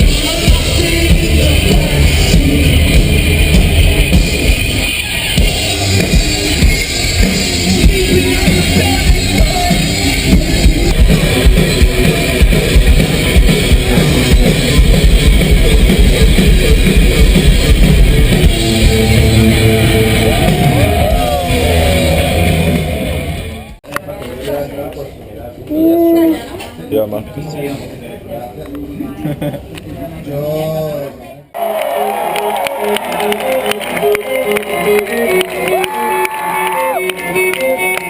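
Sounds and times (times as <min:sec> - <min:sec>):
person singing: 0:00.0 - 0:03.1
live rock band playing: 0:00.0 - 0:23.8, 0:32.8 - 0:38.0.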